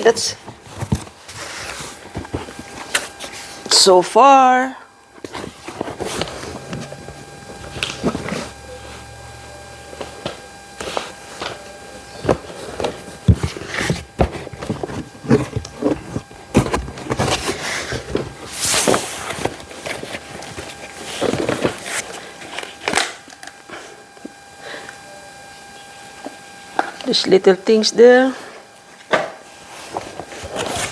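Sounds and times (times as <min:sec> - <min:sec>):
packaging rustling and clicking: 0:05.2 - 0:08.6, 0:10.0 - 0:23.6, 0:29.0 - 0:30.9.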